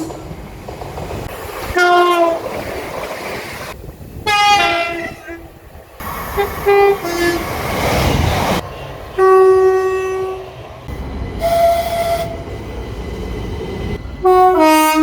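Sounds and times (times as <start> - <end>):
train rumble: 0.0 - 15.0
train horn blasts: 4.2 - 5.4, 6.4 - 7.4, 8.7 - 10.5, 11.4 - 12.4, 14.2 - 15.0.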